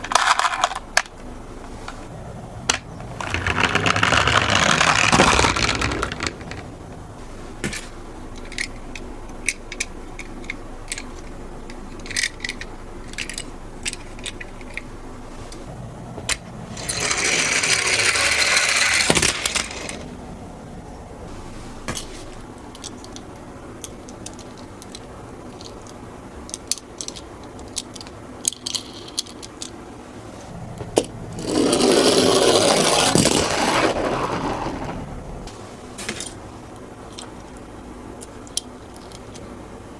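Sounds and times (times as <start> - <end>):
toy cars clicking and knocking: 0.0 - 1.1, 2.7 - 6.6, 8.4 - 14.9, 16.3 - 20.0, 22.7 - 29.8, 31.0 - 35.0, 38.2 - 39.5
toy cars rattling down a slope: 0.0 - 1.1, 3.2 - 6.6, 16.7 - 20.0, 31.4 - 35.1.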